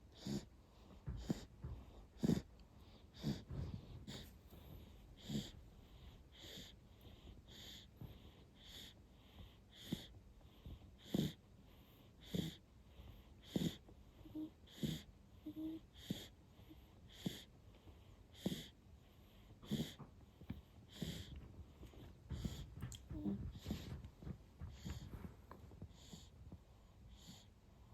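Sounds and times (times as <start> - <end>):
baby snoring: 0.1 - 0.5, 2.2 - 2.5, 3.1 - 3.5, 5.2 - 5.6, 11.0 - 11.4, 12.2 - 12.6, 13.4 - 16.4.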